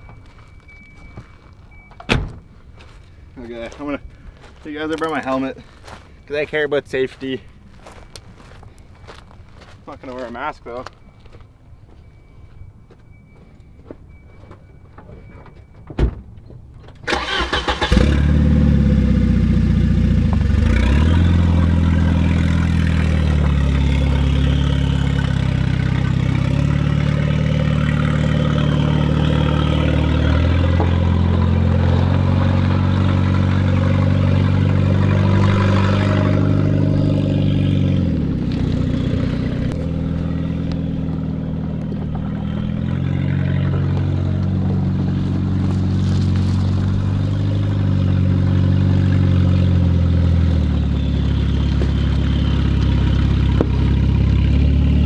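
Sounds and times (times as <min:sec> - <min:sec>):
car engine starting and revving: 0:17.0 - 0:55.0.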